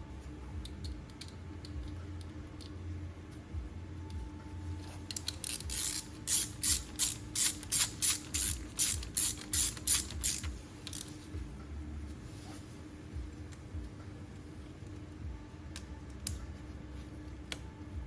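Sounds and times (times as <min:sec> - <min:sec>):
ratchet wrench clicking: 0:05.1 - 0:11.1.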